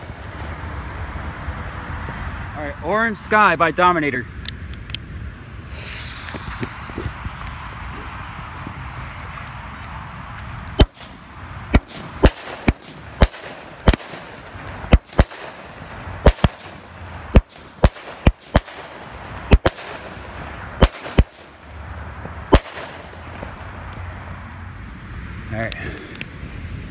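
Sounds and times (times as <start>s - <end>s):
firework cake bangs: 11.8s - 21.5s.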